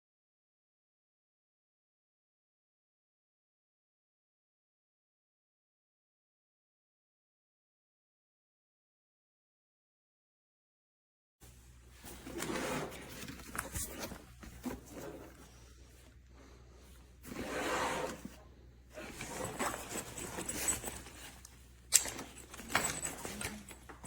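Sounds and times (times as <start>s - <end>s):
backpack fabric rustling: 11.5s - 21.4s, 22.0s - 24.0s.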